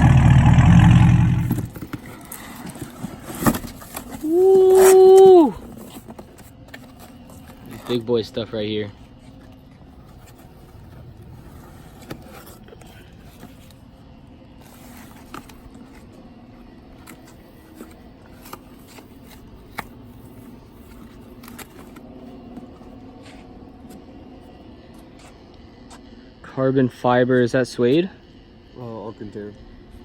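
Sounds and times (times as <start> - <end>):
steady low hum: 0.0 - 30.0
handling scrapes: 8.9 - 14.0, 14.6 - 16.1.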